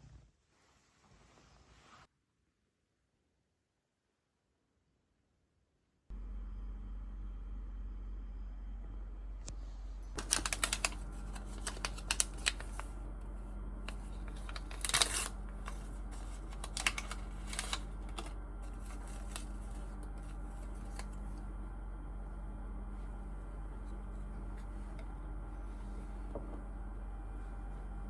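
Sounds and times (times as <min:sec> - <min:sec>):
rustling scrape: 0:00.0 - 0:02.1, 0:13.9 - 0:21.2
steady low hum: 0:06.1 - 0:28.0.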